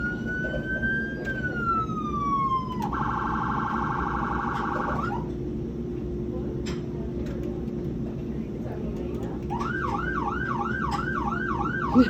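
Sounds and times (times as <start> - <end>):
fire truck siren wailing: 0.0 - 5.3, 9.5 - 12.0.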